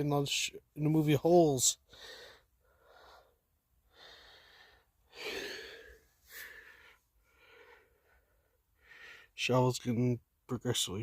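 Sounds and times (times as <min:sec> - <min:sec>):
man breathing hard: 0:01.8 - 0:09.4.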